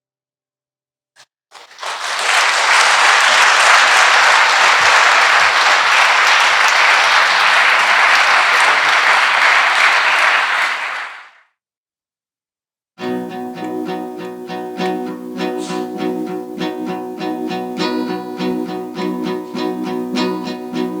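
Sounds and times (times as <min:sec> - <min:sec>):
audience applauding: 0:01.5 - 0:11.4.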